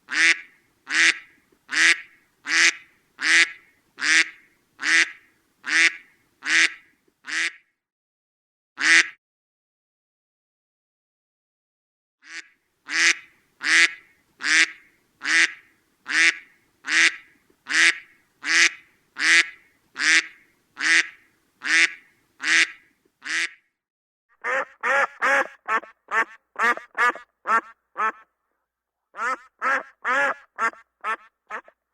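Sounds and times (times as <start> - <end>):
duck quacking: 0.1 - 7.6, 12.3 - 23.6, 24.4 - 28.3, 29.2 - 31.8.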